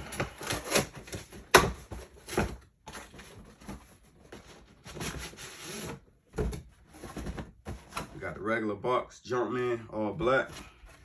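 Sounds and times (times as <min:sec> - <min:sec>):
cardboard rustling: 0:00.0 - 0:08.4.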